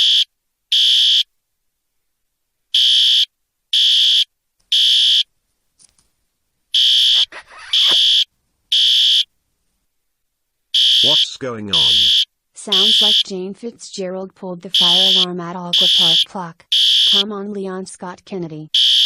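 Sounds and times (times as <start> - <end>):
fire alarm beeping: 2.8 - 5.2, 6.8 - 9.2, 10.8 - 13.3, 14.7 - 17.3, 18.8 - 19.0.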